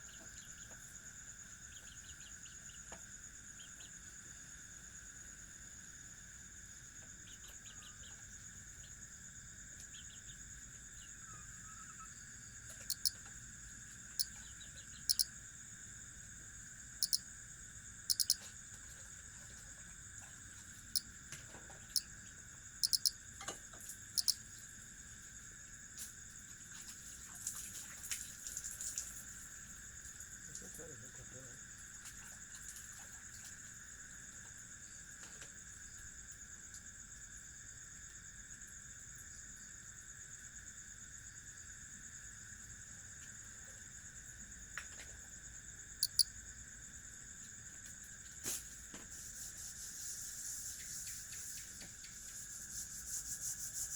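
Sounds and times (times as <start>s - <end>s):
crickets trilling: 11.0s - 13.2s, 14.2s - 15.4s, 17.0s - 17.3s, 18.1s - 18.4s, 22.0s - 23.2s, 24.2s - 24.4s, 45.4s - 46.9s
short sharp chirps: 12.9s - 13.1s, 18.1s - 18.4s, 22.8s - 23.1s, 46.0s - 46.2s.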